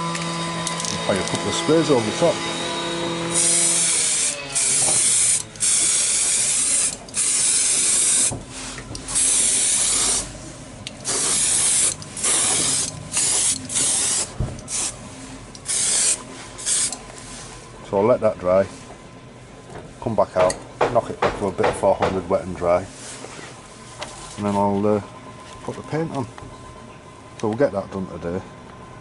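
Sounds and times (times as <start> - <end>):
aerosol can spraying: 3.4 - 8.3, 9.2 - 10.3, 11.0 - 15.0, 15.6 - 17.0.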